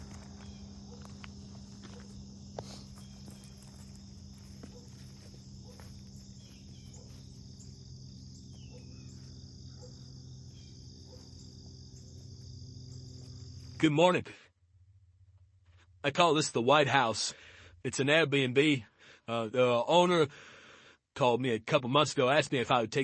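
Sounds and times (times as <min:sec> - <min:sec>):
insects chirping: 0:00.0 - 0:14.0.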